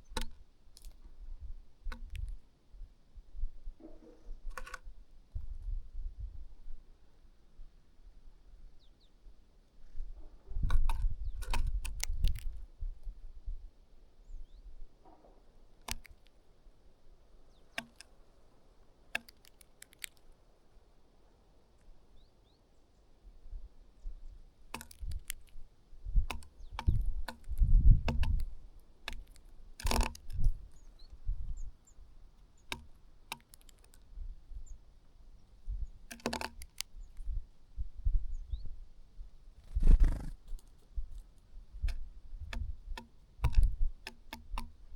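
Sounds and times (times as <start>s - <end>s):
birds pecking at food: 0.0s - 3.0s, 10.5s - 13.2s, 15.2s - 22.4s, 23.7s - 37.8s, 39.4s - 44.9s.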